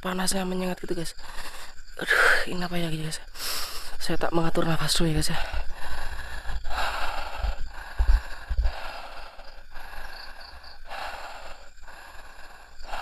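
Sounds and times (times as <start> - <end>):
man breathing heavily: 1.2 - 1.9, 5.2 - 13.0
low thumps: 7.4 - 8.8.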